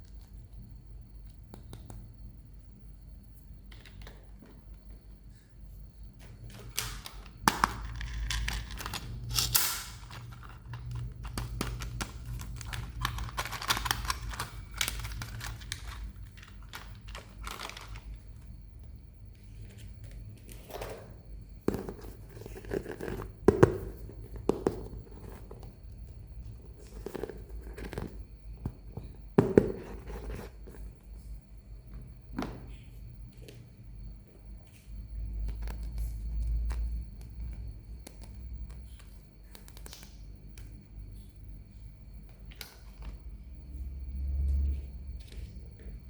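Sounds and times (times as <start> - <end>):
packaging tearing and crinkling: 6.5 - 18.2
items knocking and tapping: 27.1 - 30.8.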